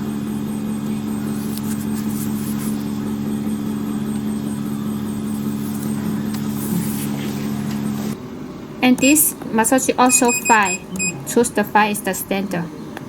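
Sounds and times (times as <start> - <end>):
machine motor hum: 0.0 - 8.2.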